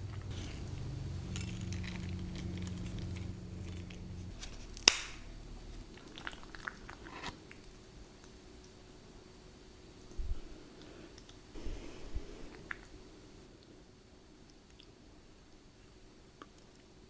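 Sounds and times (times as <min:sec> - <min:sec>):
chewing food: 0:00.0 - 0:08.8.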